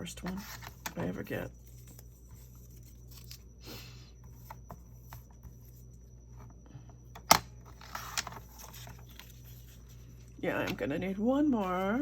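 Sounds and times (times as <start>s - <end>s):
low steady hum: 0.0s - 12.0s
paper rustling: 0.2s - 3.5s.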